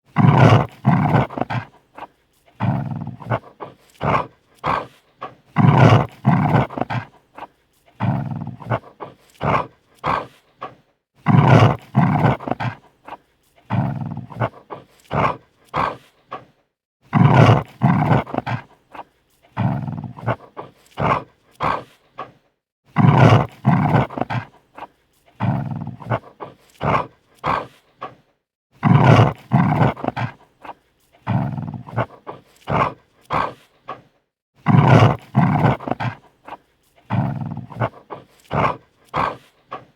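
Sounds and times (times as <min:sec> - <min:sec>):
large dog snarling: 0:00.1 - 0:39.9.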